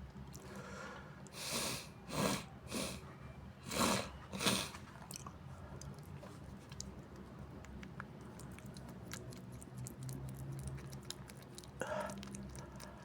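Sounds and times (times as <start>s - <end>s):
congested nose sniffing: 1.4s - 3.0s, 3.6s - 4.8s.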